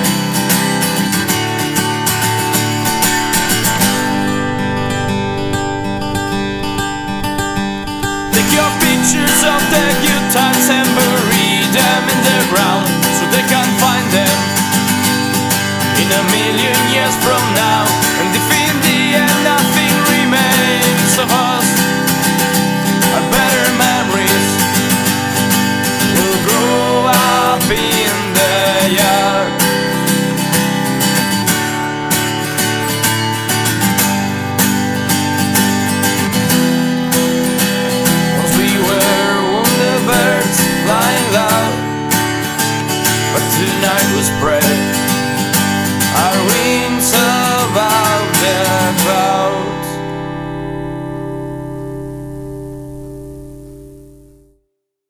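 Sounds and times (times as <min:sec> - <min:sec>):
acoustic guitar strumming: 0:00.0 - 0:54.6
bending melody line: 0:01.2 - 0:32.0
gliding melody line: 0:01.8 - 0:15.9.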